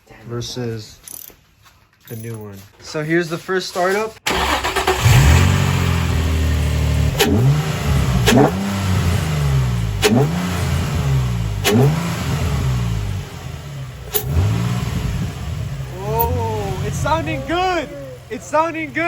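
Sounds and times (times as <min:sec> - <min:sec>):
car engine revving: 0:04.3 - 0:19.0.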